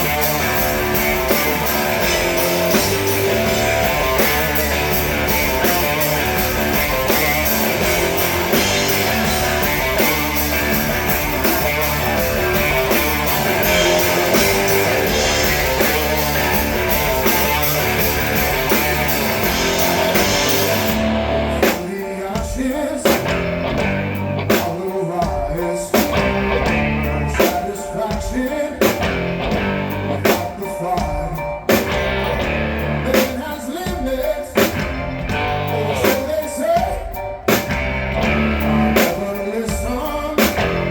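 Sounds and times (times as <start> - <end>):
person singing: 0.0 - 23.4, 38.5 - 40.9
drums: 0.0 - 40.9
electric guitar: 0.0 - 40.9.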